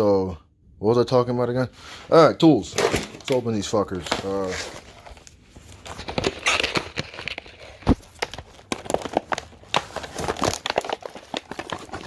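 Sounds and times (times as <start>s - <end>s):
packaging crinkling and tearing: 2.8s - 12.0s.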